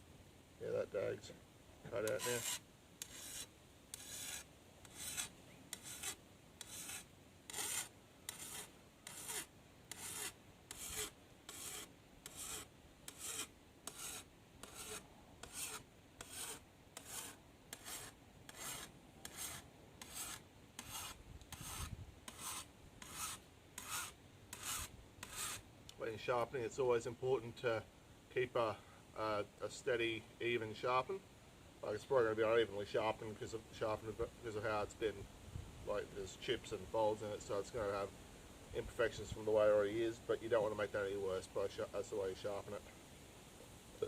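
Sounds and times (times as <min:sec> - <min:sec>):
file rasping on steel blade: 0:02.0 - 0:25.6.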